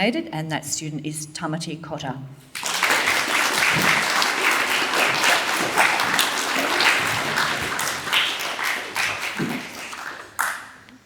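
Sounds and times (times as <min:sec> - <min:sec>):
audience clapping: 0:02.5 - 0:11.0.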